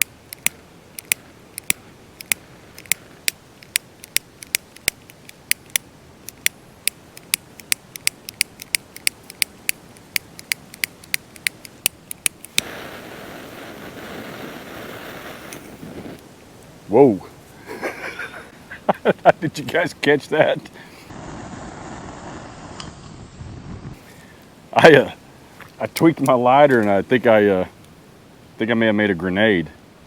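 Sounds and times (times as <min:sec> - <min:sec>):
lighter igniter clicking: 0:00.0 - 0:16.2
lighter flame hissing: 0:06.3 - 0:16.4.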